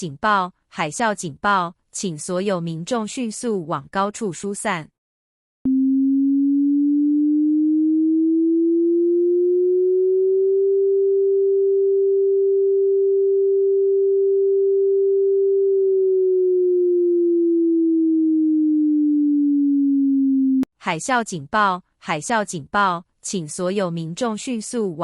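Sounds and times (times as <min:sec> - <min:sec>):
warning siren tone: 0:05.7 - 0:20.7.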